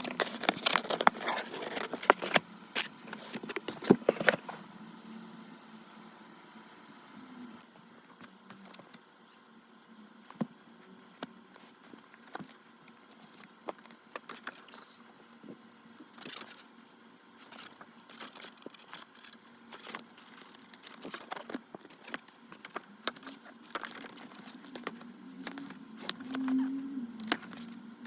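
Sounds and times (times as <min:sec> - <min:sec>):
packaging rustling: 0:00.0 - 0:04.6, 0:17.4 - 0:27.8.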